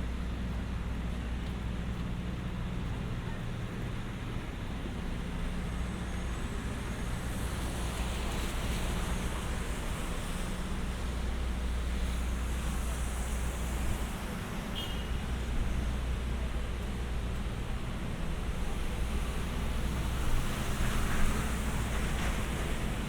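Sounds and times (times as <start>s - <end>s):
tyres hissing on wet pavement: 5.3s - 23.0s.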